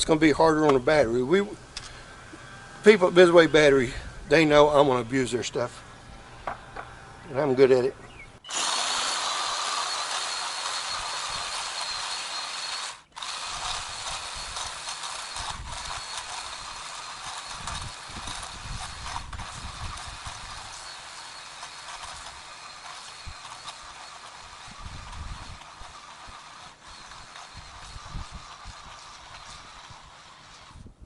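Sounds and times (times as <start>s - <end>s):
edger chopping through soil: 8.5s - 30.9s.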